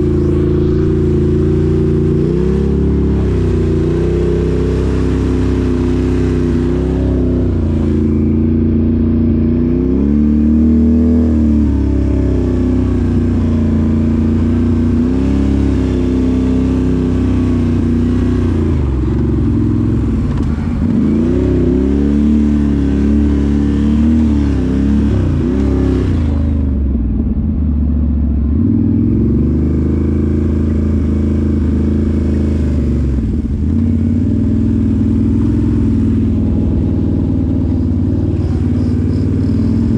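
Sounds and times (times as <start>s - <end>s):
off-road vehicle engine revving: 0.0s - 39.9s.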